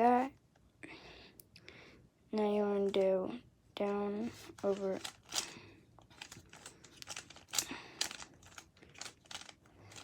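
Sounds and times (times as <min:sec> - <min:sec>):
plastic puzzle cube clicking: 0:04.6 - 0:05.5, 0:06.1 - 0:10.0.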